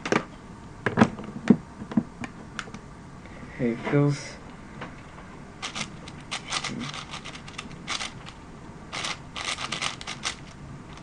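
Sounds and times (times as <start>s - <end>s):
plastic puzzle cube clicking: 9.0s - 11.0s.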